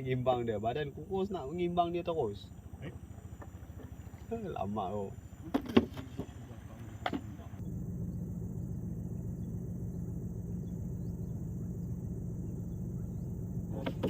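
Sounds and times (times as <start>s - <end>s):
faint insect chirps: 0.0s - 14.0s
low engine drone: 0.0s - 14.0s.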